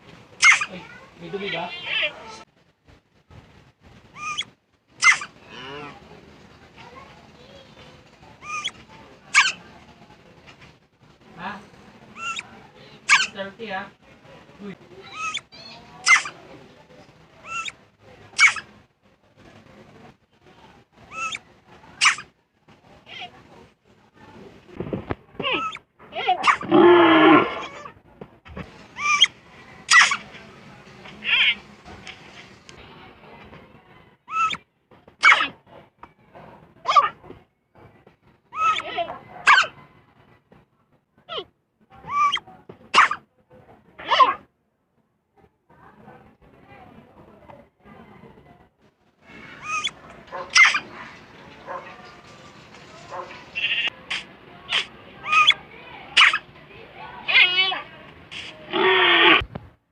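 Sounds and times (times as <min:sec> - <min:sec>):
animal sneezing: 0:00.4 - 0:00.7, 0:04.2 - 0:05.4, 0:15.2 - 0:16.4, 0:18.4 - 0:18.7, 0:22.0 - 0:22.3, 0:26.4 - 0:27.9, 0:29.9 - 0:30.3, 0:35.2 - 0:35.6, 0:42.1 - 0:43.2, 0:49.6 - 0:50.9, 0:53.2 - 0:55.6, 0:56.2 - 0:56.5, 0:57.2 - 0:59.4
cat meowing: 0:26.4 - 0:27.9, 0:57.2 - 0:57.9.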